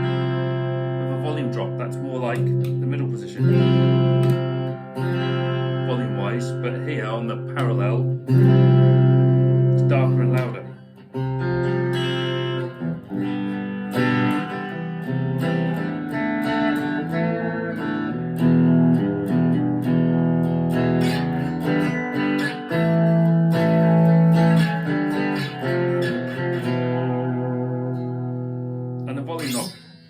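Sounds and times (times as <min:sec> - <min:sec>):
electric guitar strummed and picked: 0:00.0 - 0:30.0.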